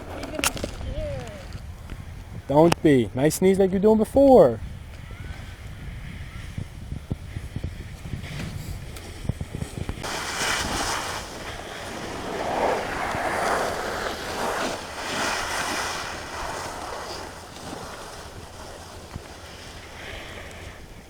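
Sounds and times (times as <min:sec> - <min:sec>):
snowboard scraping icy snow: 0:00.0 - 0:01.7, 0:07.4 - 0:21.0
wind buffeting microphone: 0:00.0 - 0:21.0.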